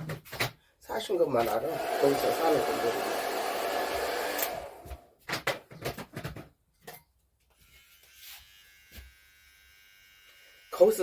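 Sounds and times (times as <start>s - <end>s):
electric hair clipper buzzing: 1.4s - 5.0s, 7.6s - 11.0s.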